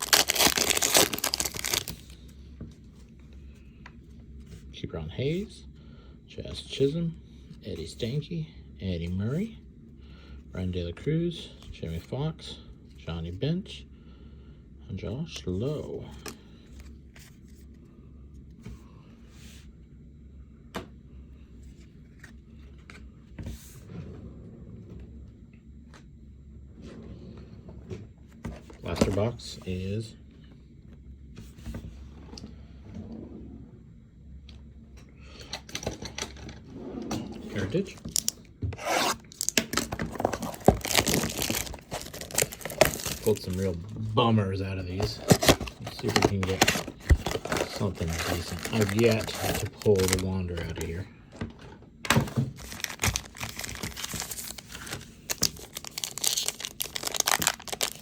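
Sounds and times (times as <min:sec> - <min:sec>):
wrapper tearing and crinkling: 0:00.0 - 0:02.1, 0:38.1 - 0:43.6, 0:45.0 - 0:51.0, 0:52.6 - 0:58.0
low steady hum: 0:00.0 - 0:58.0.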